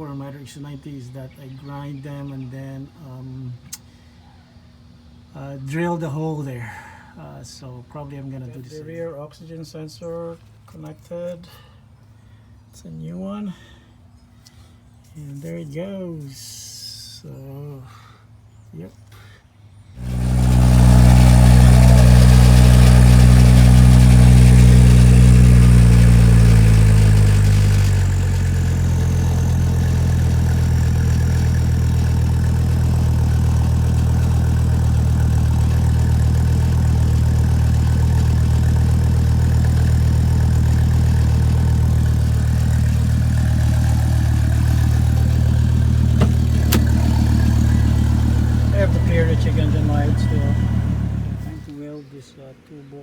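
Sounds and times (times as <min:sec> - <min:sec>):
car engine starting and idling: 0:20.0 - 0:51.7.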